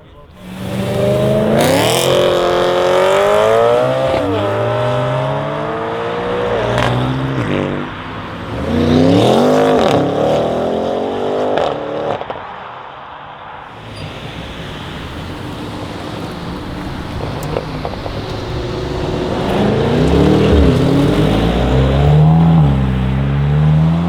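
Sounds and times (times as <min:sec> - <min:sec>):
exhaust pops: 0:00.0 - 0:10.5, 0:13.7 - 0:24.0
car engine accelerating hard: 0:00.2 - 0:12.4, 0:13.7 - 0:24.0.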